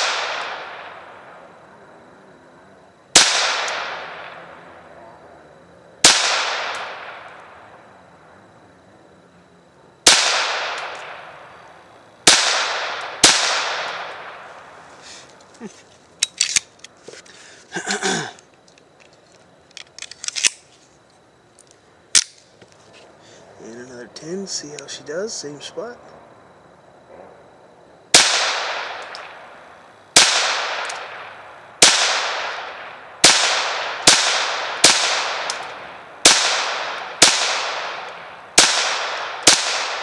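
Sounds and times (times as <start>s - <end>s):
pistol shots echoing: 0.0s - 1.2s, 3.1s - 4.5s, 6.0s - 7.4s, 10.0s - 11.4s, 12.2s - 14.5s, 28.1s - 29.5s, 30.2s - 40.0s
small sharp clicks: 18.4s - 20.6s, 21.5s - 22.8s.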